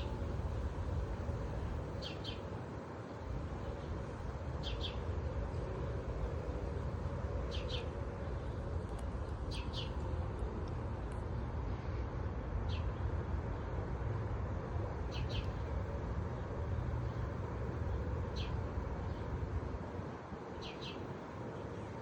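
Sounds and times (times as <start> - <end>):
low background rumble: 0.0 - 22.0
bird chirping: 7.5 - 7.9, 9.5 - 10.0.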